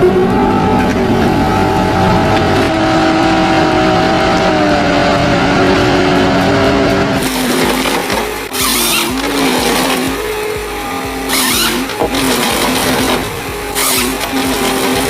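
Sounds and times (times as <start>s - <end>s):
machine engine running: 0.0s - 15.0s.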